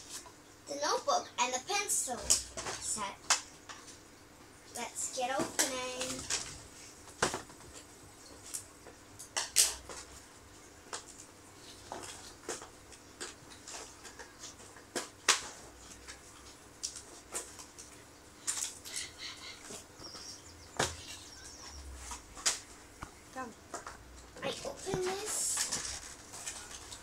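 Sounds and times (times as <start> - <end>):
plastic packaging crinkling: 24.5 - 27.0.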